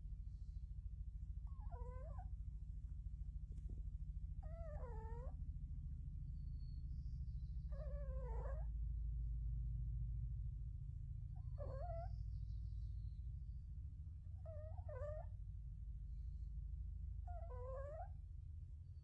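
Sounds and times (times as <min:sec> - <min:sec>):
cat snoring: 0:04.4 - 0:05.3, 0:07.7 - 0:08.6.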